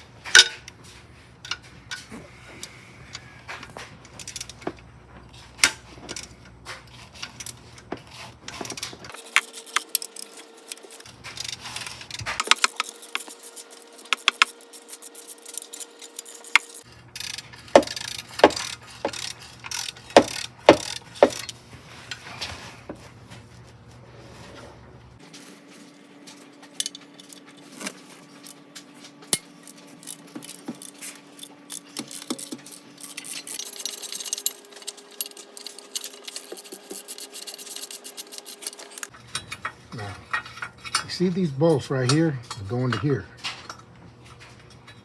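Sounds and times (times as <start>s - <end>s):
metal tools clinking on bolts: 8.6s - 21.6s, 26.7s - 28.6s, 29.3s - 45.0s.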